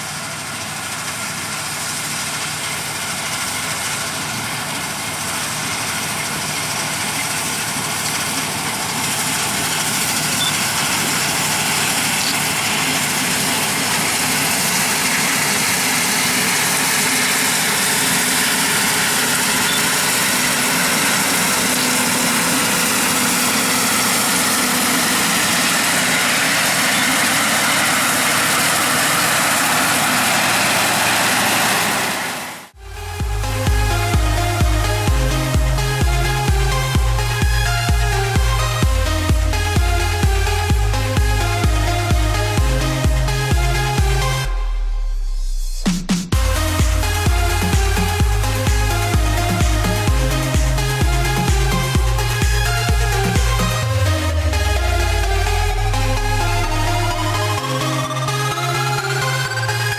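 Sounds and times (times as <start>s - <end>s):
diesel farm machinery running: 0.0s - 59.9s.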